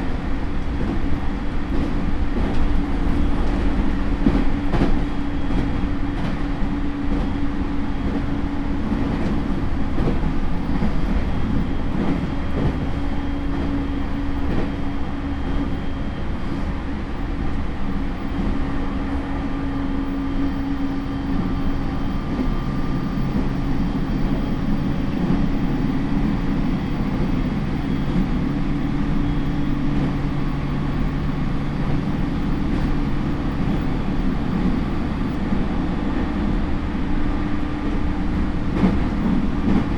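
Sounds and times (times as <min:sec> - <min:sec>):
train motor hum: 0:00.0 - 0:39.9
wheels rumbling on rail: 0:00.0 - 0:39.9
faint rail-joint clicks: 0:09.0 - 0:14.8.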